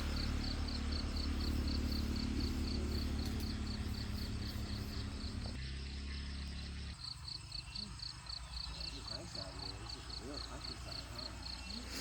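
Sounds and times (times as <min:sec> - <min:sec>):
low steady rumble: 0:00.0 - 0:07.4
insects chirping: 0:00.0 - 0:12.0.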